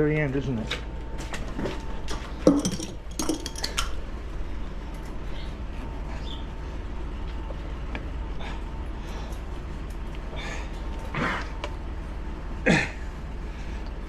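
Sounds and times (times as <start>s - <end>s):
machinery humming: 0.0s - 14.0s.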